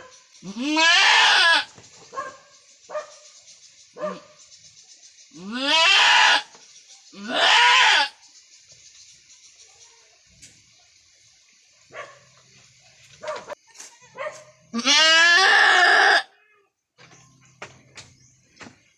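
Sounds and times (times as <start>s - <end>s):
goat bleating: 0.4s - 1.7s, 5.4s - 6.5s, 7.2s - 8.1s, 14.0s - 16.7s.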